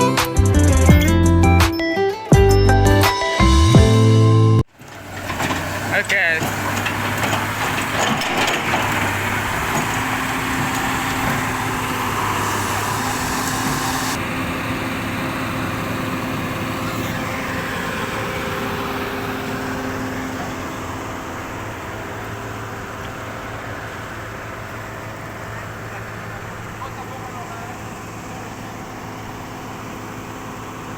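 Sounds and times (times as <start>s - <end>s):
diesel engine running: 2.4s - 30.9s
high hiss: 11.4s - 14.2s.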